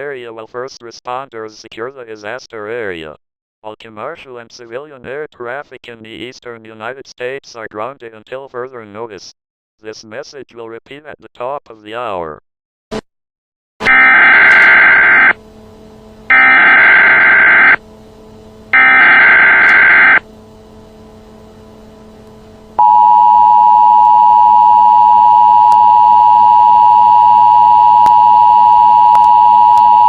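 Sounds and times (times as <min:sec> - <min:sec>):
two-tone attention signal: 0:13.9 - 0:15.4, 0:16.3 - 0:17.8, 0:18.8 - 0:20.2, 0:22.8 - 0:30.0
warbling digital data bursts: 0:18.8 - 0:20.2.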